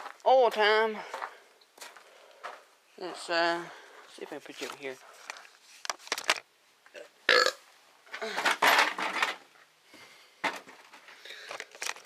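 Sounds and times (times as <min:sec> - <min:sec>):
camera scraping and rubbing: 0:04.5 - 0:06.4.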